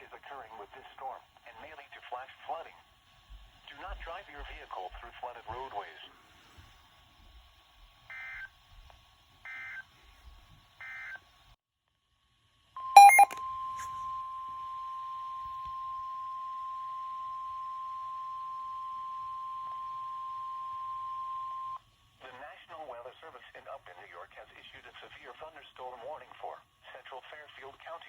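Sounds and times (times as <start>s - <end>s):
steady alert tone: 13.0s - 13.4s.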